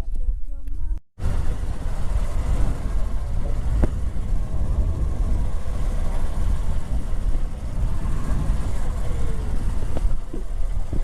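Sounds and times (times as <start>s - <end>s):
motor vehicle rumble: 1.1s - 11.0s
wind buffeting microphone: 1.2s - 11.0s.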